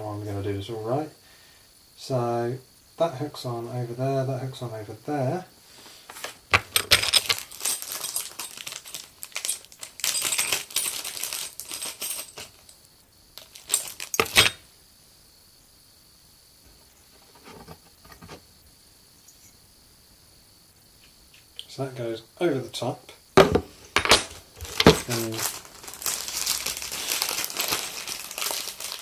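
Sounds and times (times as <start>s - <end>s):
small metal parts clinking: 6.6s - 12.8s, 13.4s - 14.6s, 23.8s - 29.0s.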